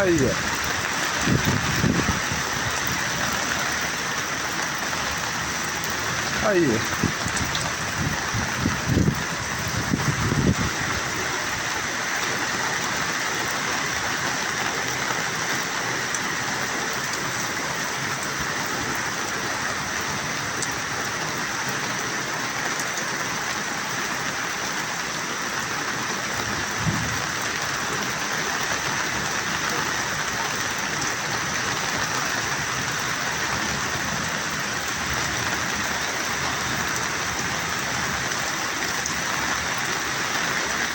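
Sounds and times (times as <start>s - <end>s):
heavy rain hissing: 0.0s - 40.9s.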